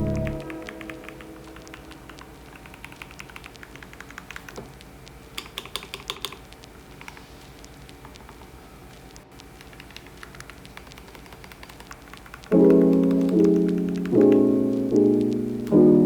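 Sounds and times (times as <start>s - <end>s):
mechanical keyboard key clacks: 0.4s - 7.2s, 9.4s - 14.4s.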